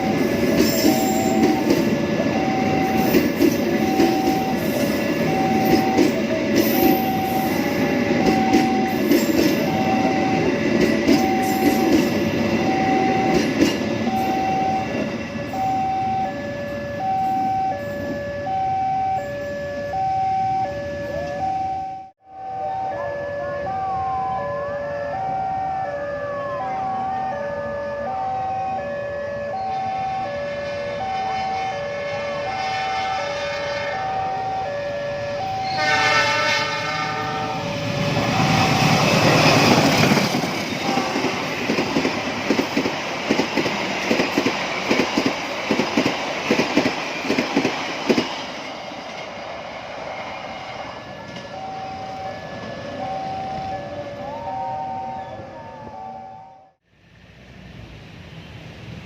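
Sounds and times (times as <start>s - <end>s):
train rushing past: 0.0s - 18.6s, 22.4s - 59.0s
level crossing two-tone alarm: 0.0s - 31.6s, 34.0s - 36.2s, 37.5s - 40.4s, 51.1s - 56.8s
train horn blast: 30.3s - 34.6s, 35.6s - 37.8s, 40.7s - 41.5s.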